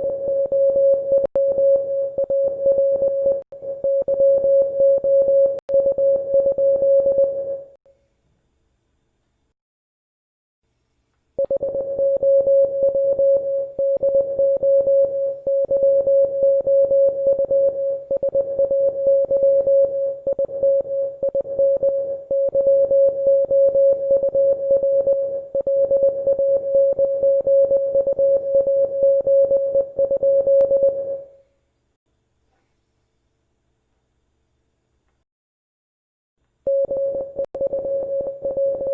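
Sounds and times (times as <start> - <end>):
morse code tone: 0.0 - 7.8, 11.4 - 31.4, 36.7 - 38.9.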